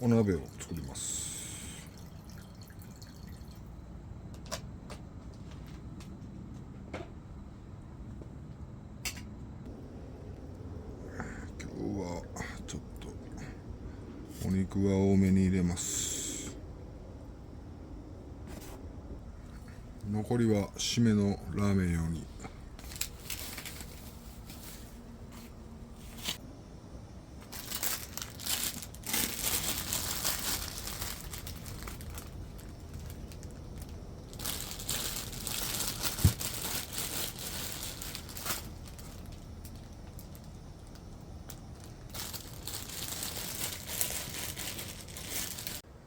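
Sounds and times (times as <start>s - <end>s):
plastic packaging crinkling: 22.7s - 25.1s, 27.5s - 45.8s.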